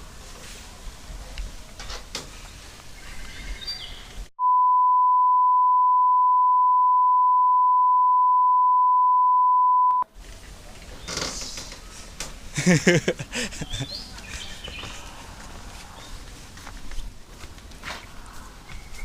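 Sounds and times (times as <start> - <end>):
faint outdoor background: 0.0 - 19.0
high beep tone: 4.4 - 10.0.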